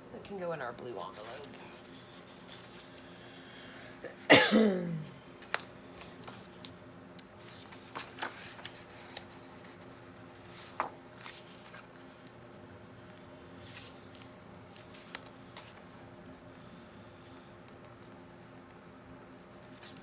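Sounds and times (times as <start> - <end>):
woman clearing her throat: 4.0 - 5.2
paper rustling: 7.4 - 12.4.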